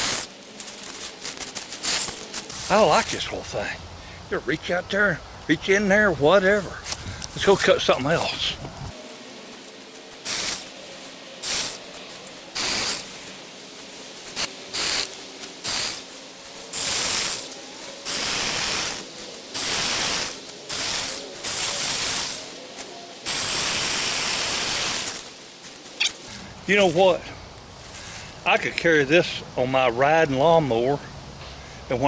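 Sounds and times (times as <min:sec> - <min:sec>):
electric chainsaw bursts: 0:00.0 - 0:02.5, 0:08.9 - 0:26.3.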